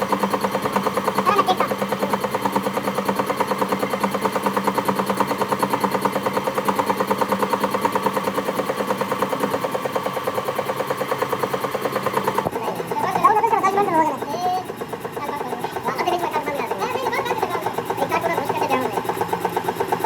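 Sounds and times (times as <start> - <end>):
machine pulsing: 0.0 - 20.0.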